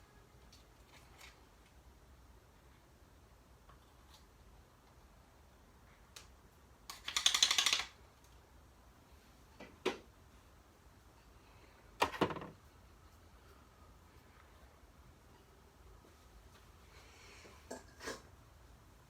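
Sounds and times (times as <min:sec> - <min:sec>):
rattle of fast clicks: 0:06.9 - 0:08.0.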